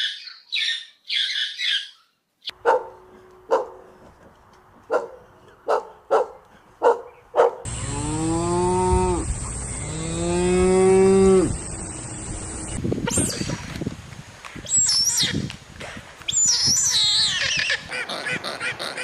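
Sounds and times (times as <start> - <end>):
dog barking: 2.5 - 3.9, 4.9 - 7.7
cow mooing: 7.7 - 11.6.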